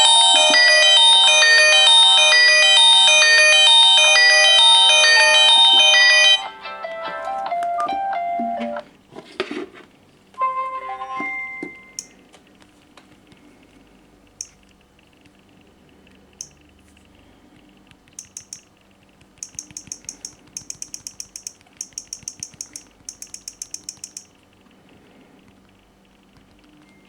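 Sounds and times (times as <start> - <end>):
sharp key clicks: 14.4 - 14.9, 18.1 - 24.4.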